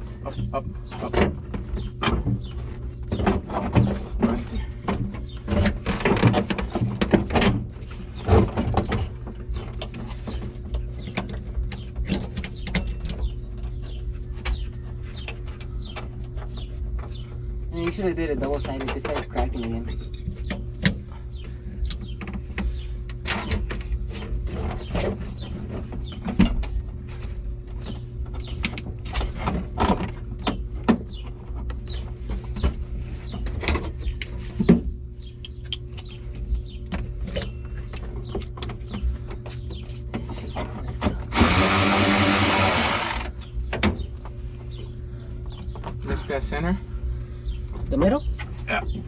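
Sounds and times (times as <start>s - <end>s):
power drill running: 41.3s - 43.3s.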